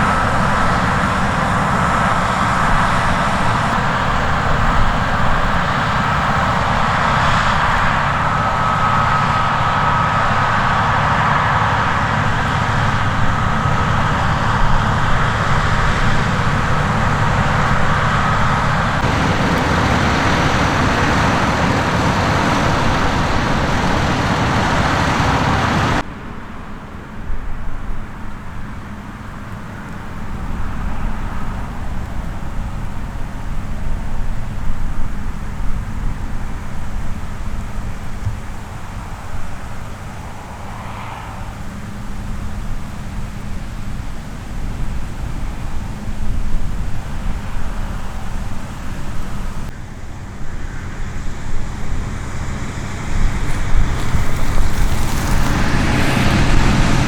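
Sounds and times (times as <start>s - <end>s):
farm machinery engine drone: 0.0s - 27.1s, 41.6s - 57.0s.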